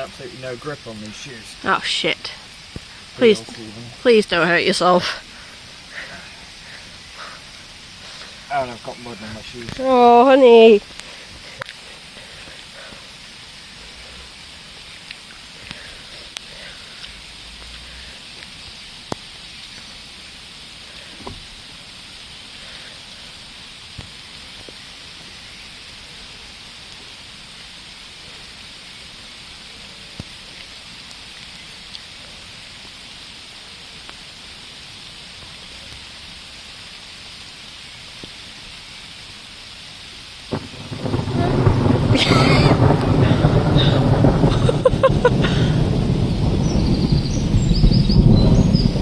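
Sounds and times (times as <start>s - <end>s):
raindrops tapping: 0.0s - 38.7s, 40.4s - 49.0s
steady rain hiss: 0.0s - 49.0s
thunder crack: 40.5s - 49.0s.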